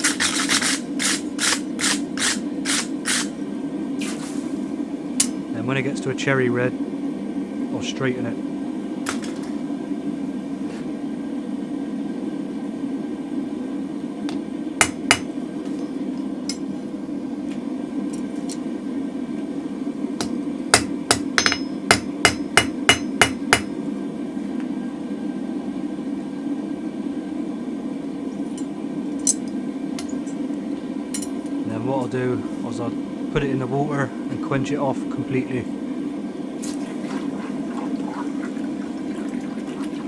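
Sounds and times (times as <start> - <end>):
hammer striking steel on anvil: 14.8 - 15.3, 20.2 - 23.7.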